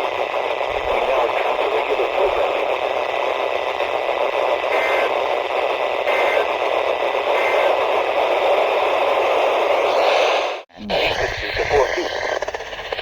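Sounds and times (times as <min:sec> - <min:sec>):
faint two-tone data bursts: 0:00.0 - 0:08.3
radio static hiss: 0:00.0 - 0:13.0.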